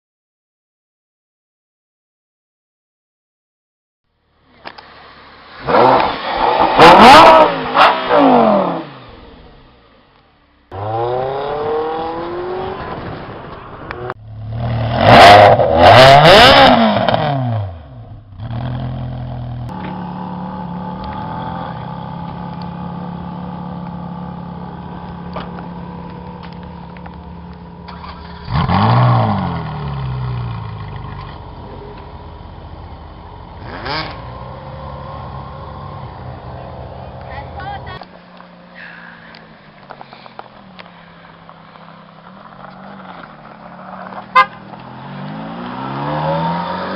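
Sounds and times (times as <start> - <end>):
sports car engine revving: 4.5 - 9.8, 10.7 - 13.0, 13.9 - 38.4, 39.4 - 46.9
car engine idling: 19.0 - 28.8, 29.4 - 44.9.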